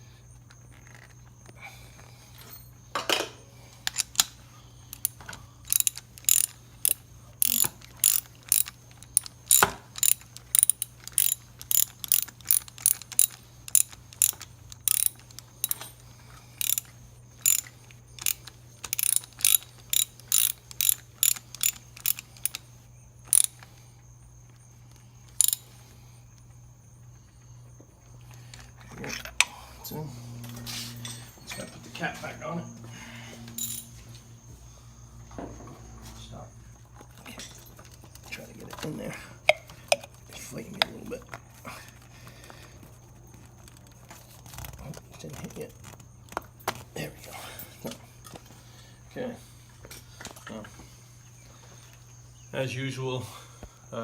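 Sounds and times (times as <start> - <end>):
ratchet wrench clicking: 3.8 - 4.3, 4.9 - 16.0, 16.6 - 22.6, 23.3 - 23.7, 25.3 - 25.7, 33.6 - 33.9.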